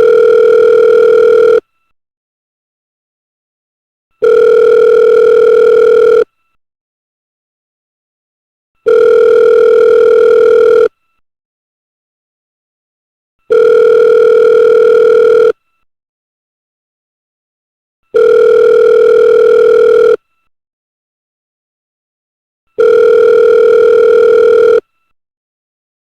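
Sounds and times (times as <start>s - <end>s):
telephone ringback tone: 0.0s - 1.6s, 4.2s - 6.3s, 8.8s - 10.9s, 13.5s - 15.6s, 18.1s - 20.2s, 22.8s - 24.9s.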